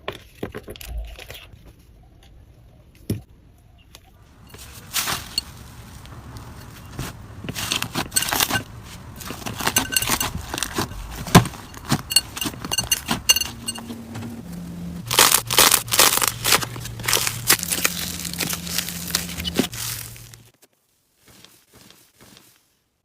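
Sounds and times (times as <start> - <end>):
slime crackling when squeezed: 15.1 - 20.4.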